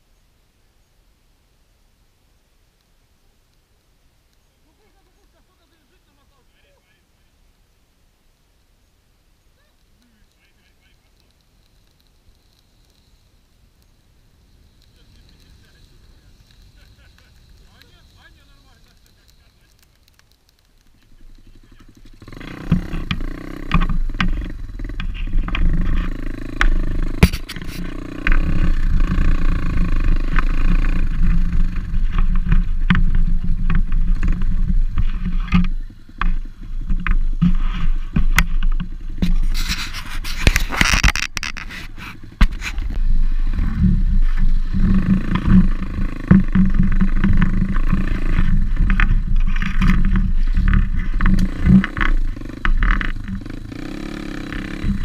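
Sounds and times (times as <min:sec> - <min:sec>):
pit bike engine running: 0:21.0 - 0:55.0
knocks and rattles: 0:21.2 - 0:43.0, 0:43.6 - 0:55.0.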